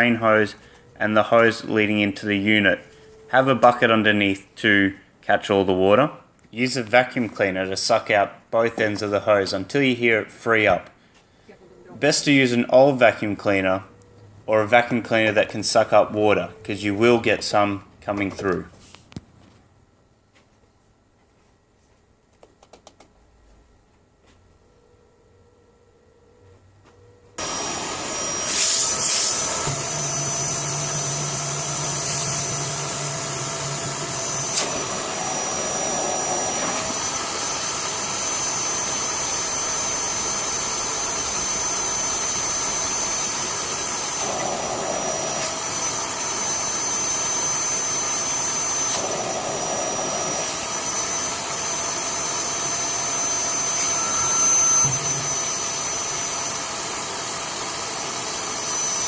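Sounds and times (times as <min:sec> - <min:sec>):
vacuum cleaner whining: 0:27.3 - 0:59.0.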